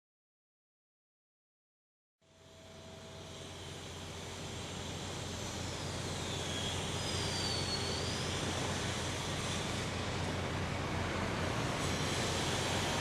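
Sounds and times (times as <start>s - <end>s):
construction site noise: 2.2s - 13.0s
thin high squeal: 5.4s - 9.9s
city traffic: 8.4s - 13.0s.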